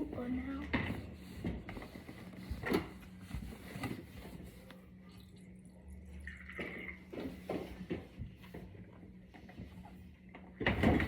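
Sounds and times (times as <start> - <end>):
water running into a cup: 5.1 - 7.1.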